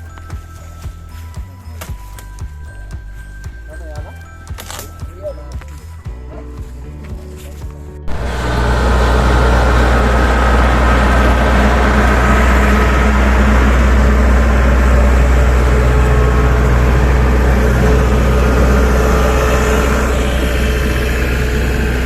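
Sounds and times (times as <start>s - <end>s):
engine running with deep hum: 5.6s - 22.0s
rushing noise: 8.1s - 22.0s.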